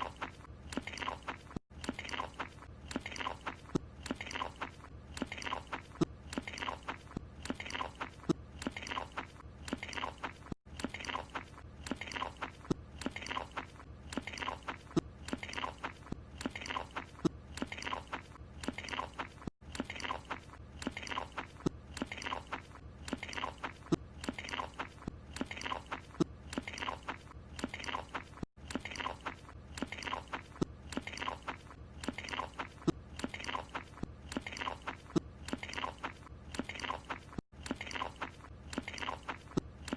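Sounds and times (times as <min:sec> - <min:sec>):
wet chewing and mouth-smacking: 0:00.0 - 0:39.9.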